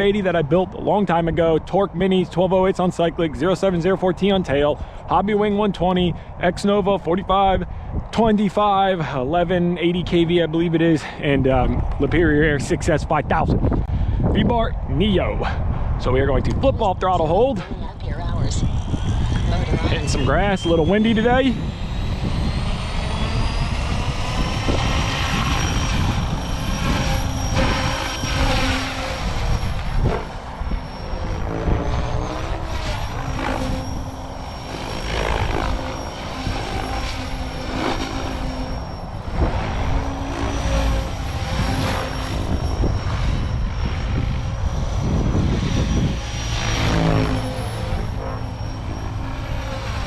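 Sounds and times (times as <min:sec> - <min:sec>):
wind rumble on microphone: 0:00.0 - 0:50.0
rotor blades whooshing: 0:15.4 - 0:50.0
electric motor whining: 0:17.7 - 0:50.0.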